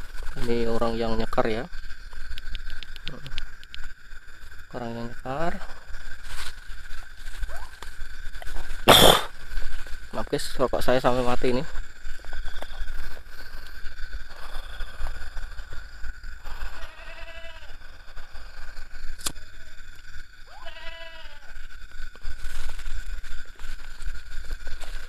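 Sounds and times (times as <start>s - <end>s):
goat bleating: 16.8s - 17.7s, 20.5s - 21.5s.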